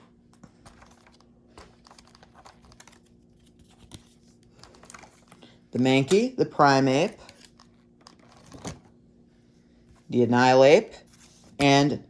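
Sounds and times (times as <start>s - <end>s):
faint steady hum: 0.0s - 12.0s
plastic packaging crinkling: 0.7s - 5.5s.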